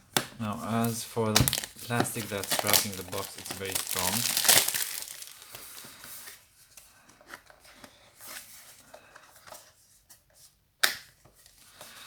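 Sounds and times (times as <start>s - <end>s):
plastic wrapping crinkling: 0.6s - 6.0s.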